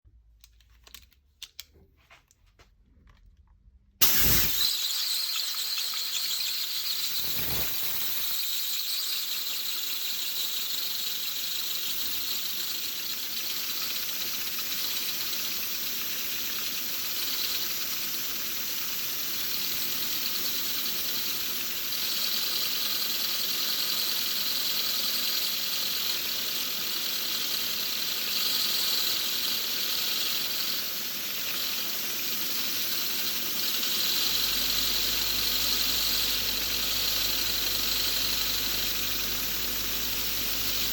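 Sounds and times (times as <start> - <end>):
turbine high squeal: 4.0 - 14.0
hiss: 4.0 - 40.9.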